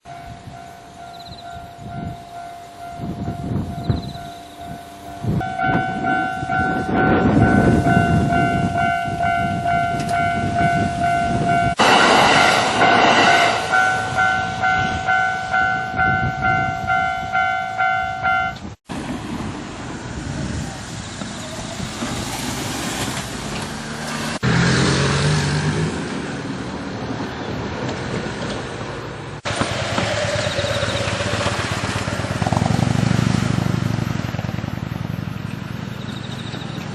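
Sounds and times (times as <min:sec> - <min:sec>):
level crossing bell ringing: 0:00.0 - 0:11.8, 0:13.7 - 0:18.6
electric trains rumbling past: 0:00.1 - 0:36.9.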